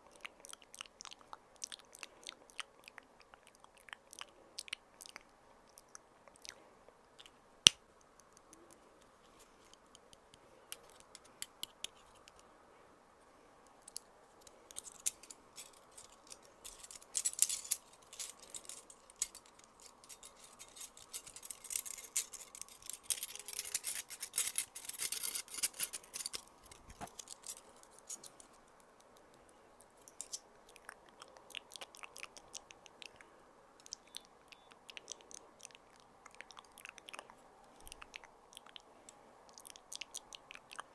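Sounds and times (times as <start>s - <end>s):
crisp clicks: 7.2s - 12.5s
crackly high-pitched scratching: 8.1s - 12.5s, 13.7s - 33.1s.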